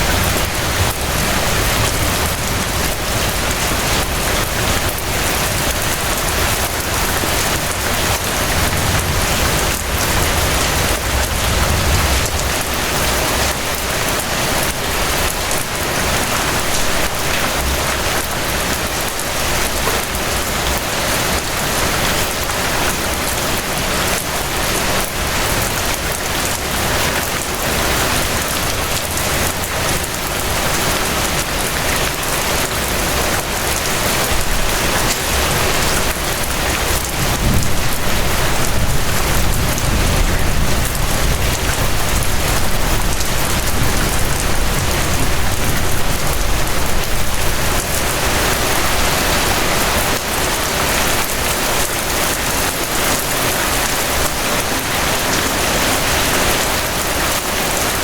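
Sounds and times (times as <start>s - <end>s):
low rumble: 0.0s - 13.6s
rain pattering: 0.0s - 58.0s.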